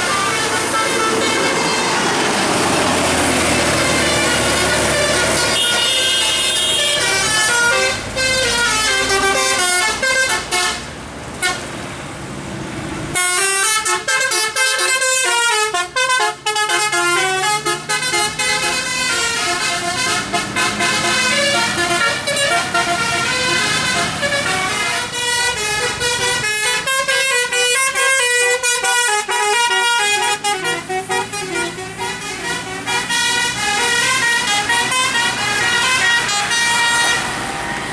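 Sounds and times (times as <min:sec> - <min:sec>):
bus multi-tone horn melody: 0:00.0 - 0:11.7, 0:13.1 - 0:37.9.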